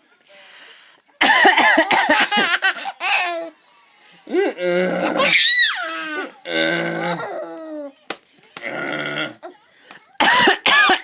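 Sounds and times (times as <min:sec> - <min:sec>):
people coughing: 0:01.2 - 0:02.6, 0:10.2 - 0:11.0
baby laughing: 0:01.8 - 0:03.6.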